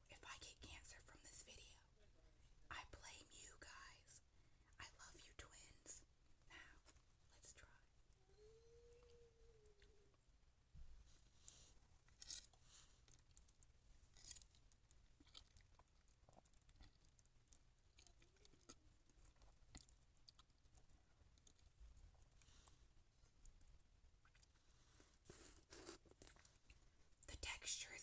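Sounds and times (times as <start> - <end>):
quiet chewing: 11.0 - 27.6
wet mouth sounds: 15.2 - 17.1.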